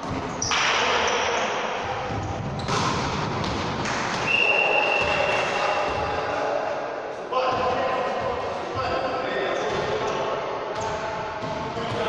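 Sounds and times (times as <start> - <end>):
referee's whistle blast: 4.2 - 5.8.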